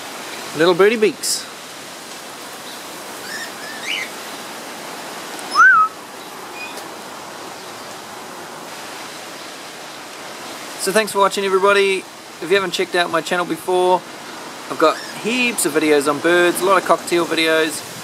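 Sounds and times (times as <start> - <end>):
steady background hiss: 0.0 - 18.0
soft bird chirps: 5.4 - 6.9
loud bird whistle: 5.5 - 6.0.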